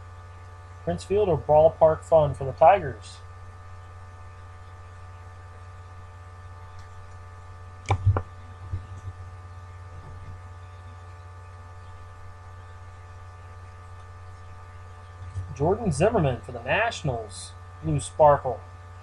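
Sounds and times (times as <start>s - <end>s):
electrical mains hum: 0.0s - 19.0s.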